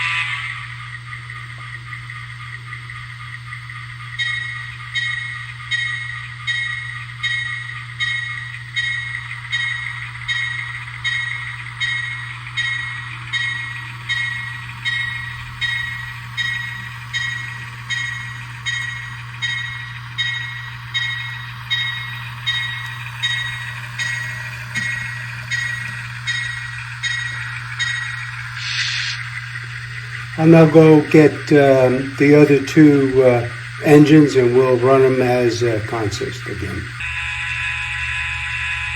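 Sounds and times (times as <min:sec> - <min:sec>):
steady low hum: 0:00.0 - 0:38.9
locomotive bell strikes: 0:04.2 - 0:28.3.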